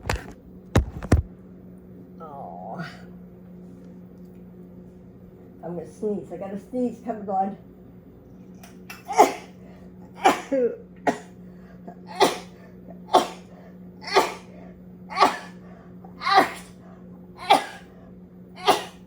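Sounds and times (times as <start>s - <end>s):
woman sneezing: 9.0s - 9.6s, 12.1s - 14.5s, 15.1s - 15.6s, 16.2s - 16.8s, 17.4s - 17.9s, 18.6s - 19.0s.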